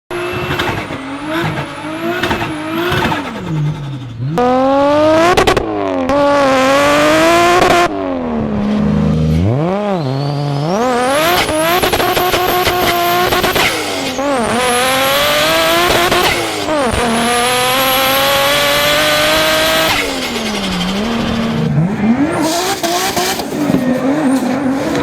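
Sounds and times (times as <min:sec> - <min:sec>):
car engines revving: 0:00.1 - 0:25.0
high turbo whistle: 0:09.8 - 0:14.4.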